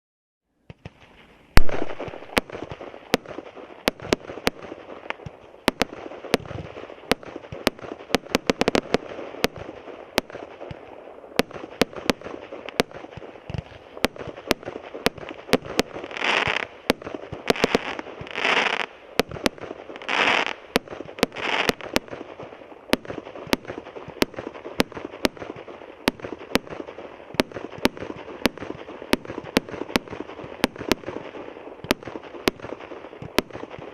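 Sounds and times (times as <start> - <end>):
firework shots: 0.6 - 33.9
firework crackling: 0.7 - 33.9.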